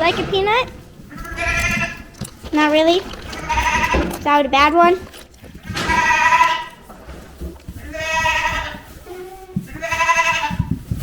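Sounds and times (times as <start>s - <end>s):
goat bleating: 1.1s - 2.2s, 3.2s - 4.3s, 5.7s - 6.9s, 7.7s - 10.6s.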